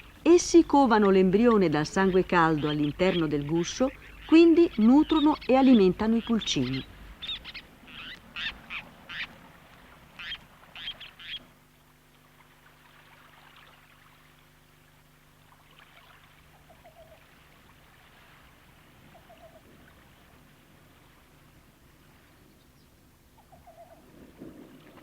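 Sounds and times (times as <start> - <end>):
faint low hum: 0.0 - 25.0
short bird calls: 6.6 - 9.4, 10.2 - 11.5.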